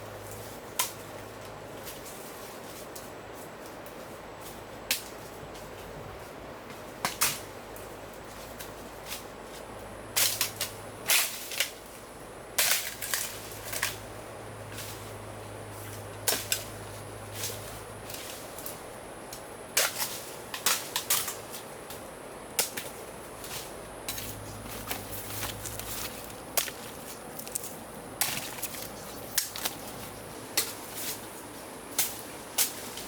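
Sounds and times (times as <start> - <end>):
bamboo cracking and snapping: 12.6 - 14.0, 24.8 - 30.0.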